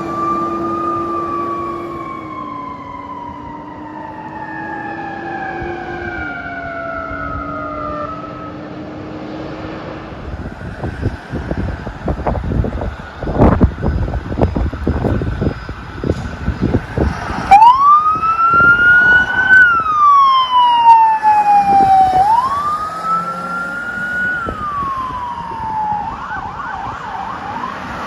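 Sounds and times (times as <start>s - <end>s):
fire truck siren wailing: 0.0s - 28.0s
road rumble: 0.0s - 28.0s
wind noise on microphone: 5.4s - 8.4s, 9.9s - 28.0s.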